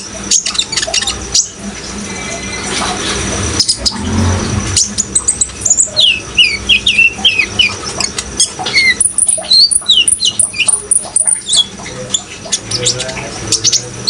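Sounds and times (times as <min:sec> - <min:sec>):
running water: 0:00.0 - 0:14.0
bird singing high chirps: 0:04.8 - 0:13.8.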